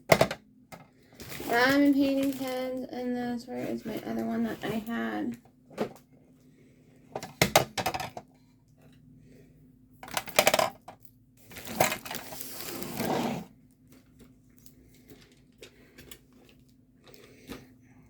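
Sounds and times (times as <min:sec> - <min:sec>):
small hard objects clattering: 0:01.2 - 0:02.8.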